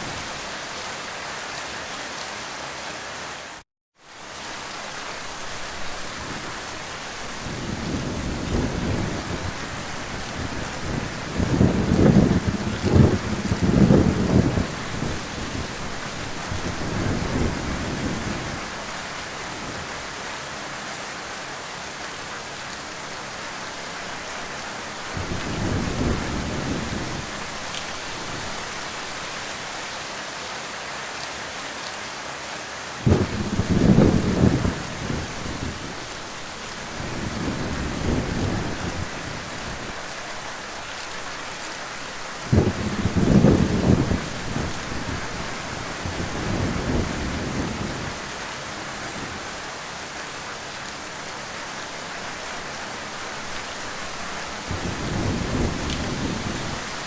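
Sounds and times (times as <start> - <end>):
heavy rain: 0.0 - 57.0
thunder rumbling: 7.4 - 18.7, 25.1 - 28.6, 33.0 - 40.0, 42.4 - 48.2, 54.6 - 57.0.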